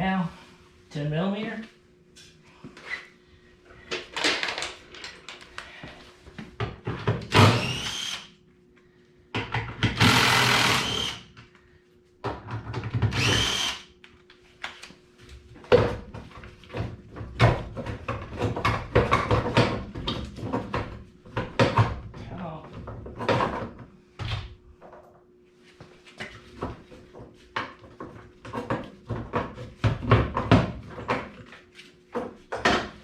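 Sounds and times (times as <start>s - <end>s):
clicks and knocks of tools: 3.9s - 5.7s
power tool whirring: 7.3s - 8.4s, 9.9s - 11.3s, 13.1s - 13.9s.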